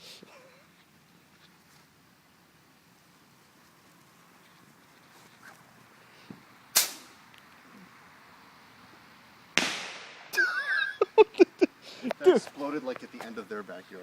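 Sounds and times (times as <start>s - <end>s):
bottle rocket bangs: 9.6s - 10.4s.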